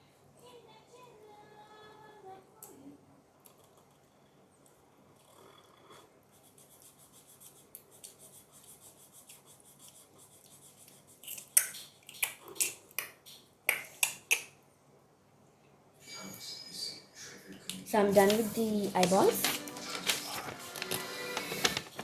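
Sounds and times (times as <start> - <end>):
pen scribbling on paper: 6.3 - 11.6.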